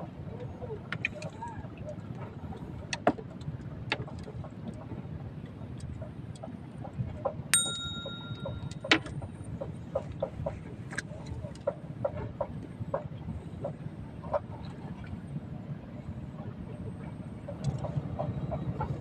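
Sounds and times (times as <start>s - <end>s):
metallic ding: 7.6s - 8.9s.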